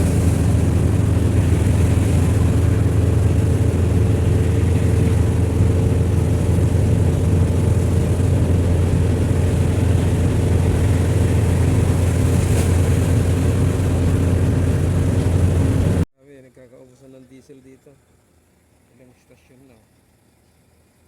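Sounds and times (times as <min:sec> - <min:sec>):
road noise: 0:00.0 - 0:16.0
vehicle engine drone: 0:00.0 - 0:16.1.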